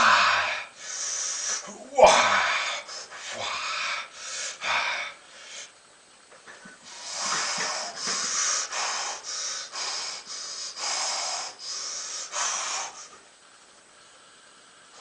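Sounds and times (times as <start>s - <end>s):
man breathing hard: 0.0s - 5.8s, 6.6s - 13.2s.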